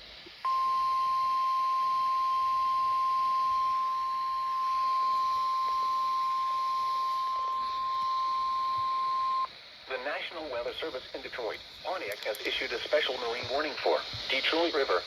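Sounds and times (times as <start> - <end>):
steady alarm tone: 0.5 - 9.5.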